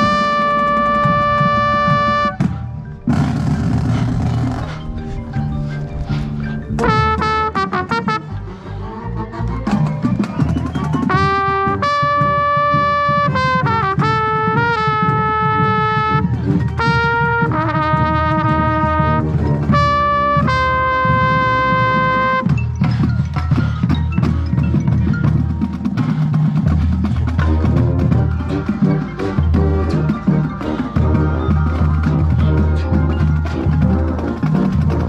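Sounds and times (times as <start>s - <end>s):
trumpet playing held notes: 0.0s - 3.4s, 6.8s - 8.4s, 11.1s - 22.6s
marching band playing: 0.0s - 35.0s.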